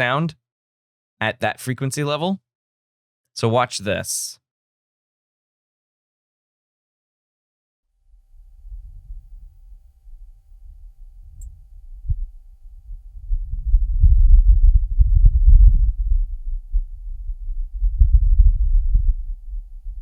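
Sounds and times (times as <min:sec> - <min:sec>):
low rumble of wind gust: 0:08.1 - 0:20.0.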